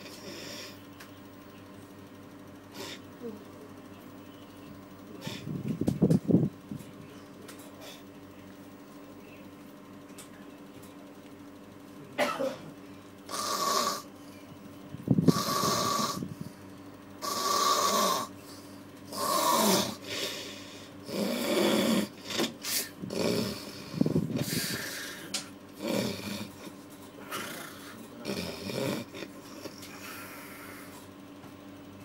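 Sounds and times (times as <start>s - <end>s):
person snoring heavily: 13.3s - 14.1s, 15.2s - 16.3s, 17.2s - 18.3s, 19.1s - 26.7s, 27.3s - 29.3s.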